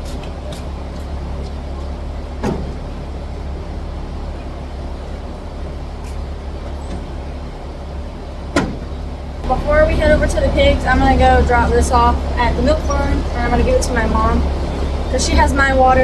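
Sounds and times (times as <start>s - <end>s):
vehicle engine running: 0.0s - 16.0s
sharp knocks: 2.4s - 2.8s, 8.5s - 8.9s.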